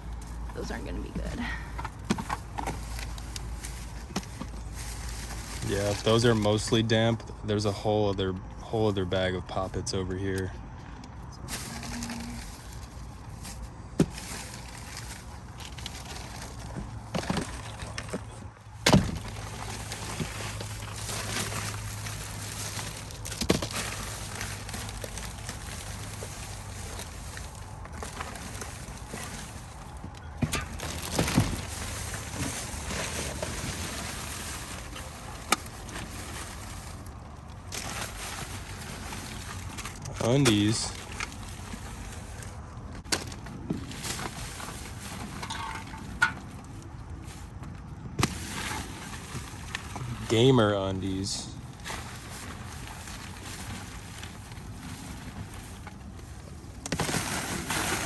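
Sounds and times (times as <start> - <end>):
plastic bags rustling: 0.0 - 7.1, 11.3 - 58.0
faint steady background noise: 0.0 - 58.0
knocks and clacks of rummaging: 43.0 - 46.7.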